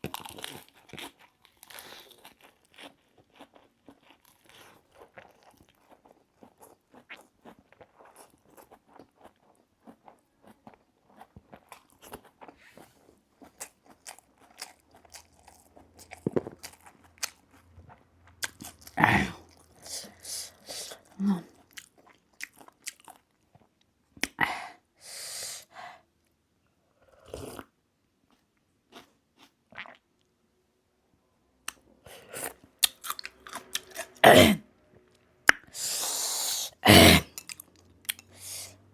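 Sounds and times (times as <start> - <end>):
chewing and crunching food: 0.0 - 24.4, 28.3 - 30.1, 31.7 - 34.2, 37.2 - 38.9.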